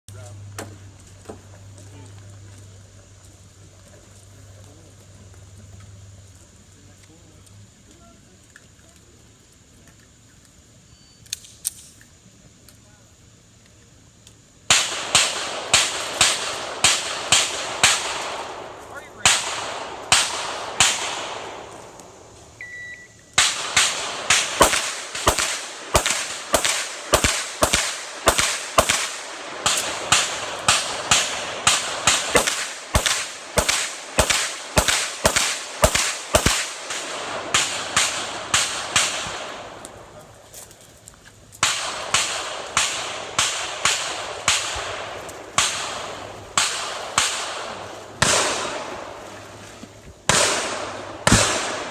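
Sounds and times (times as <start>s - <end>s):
pistol shots echoing: 14.7s - 22.4s, 23.3s - 40.2s, 41.6s - 49.6s, 50.3s - 51.9s.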